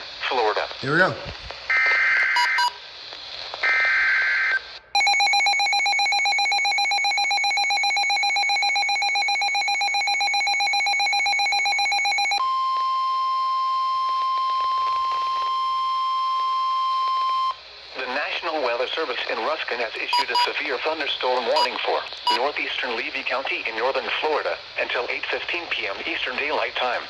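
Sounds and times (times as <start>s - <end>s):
steady warning alarm tone: 5.0s - 12.4s, 20.0s - 20.5s, 21.5s - 22.4s
pulsing electronic alarm: 5.0s - 17.4s.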